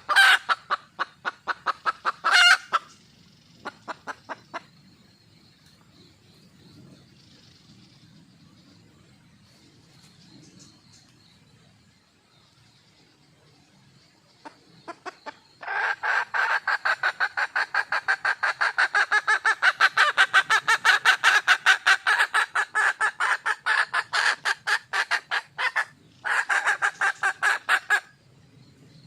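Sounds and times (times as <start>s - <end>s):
hen clucking: 0.0s - 3.0s, 3.6s - 4.8s, 14.4s - 28.1s.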